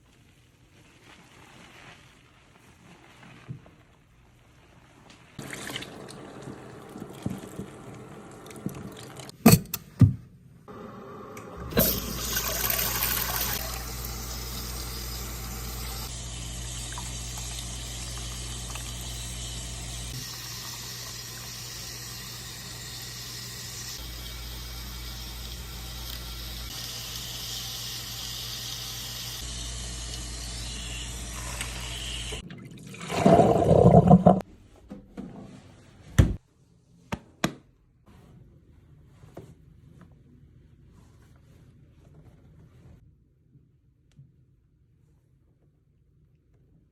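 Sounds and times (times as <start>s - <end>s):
water spraying from shower sprayer: 11.7s - 32.4s.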